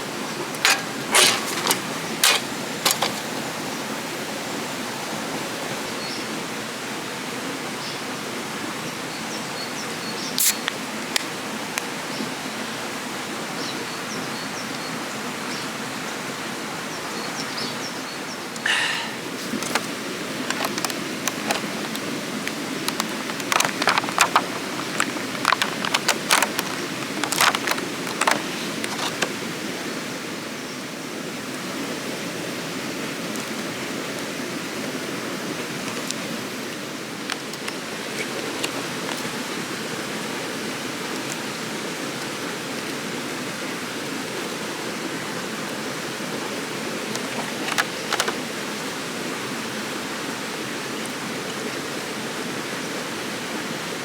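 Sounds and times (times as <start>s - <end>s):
stream water flowing: 0.0s - 54.0s
sharp clicks and knocks: 0.5s - 3.4s, 20.5s - 29.3s, 47.6s - 48.4s.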